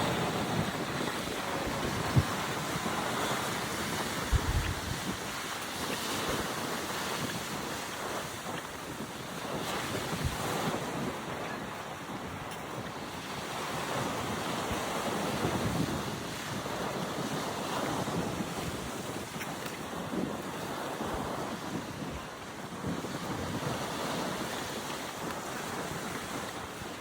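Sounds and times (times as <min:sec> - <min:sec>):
waves breaking on a beach: 0:00.0 - 0:27.0
wind buffeting the microphone: 0:00.0 - 0:27.0.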